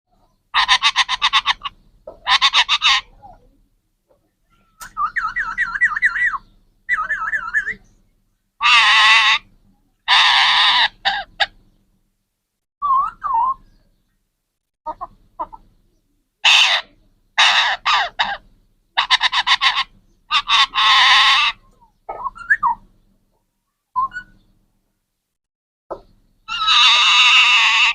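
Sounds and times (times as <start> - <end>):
parrot calling: 0.5 - 3.4, 4.5 - 7.8, 8.6 - 9.5, 10.1 - 11.6, 16.4 - 18.4, 19.0 - 22.8, 24.0 - 24.4, 26.5 - 27.9.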